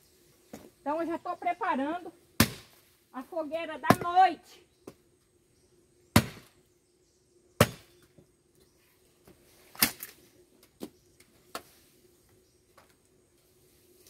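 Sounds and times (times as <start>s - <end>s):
axe chopping firewood: 2.4s - 2.8s, 3.8s - 4.3s, 6.1s - 6.6s, 7.6s - 8.0s.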